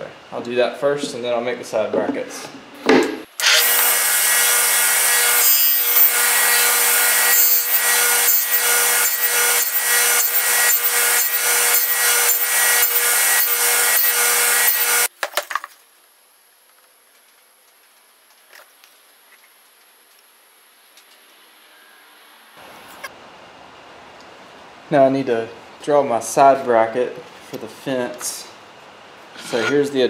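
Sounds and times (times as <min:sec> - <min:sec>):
power saw cutting plywood: 0:03.4 - 0:15.1.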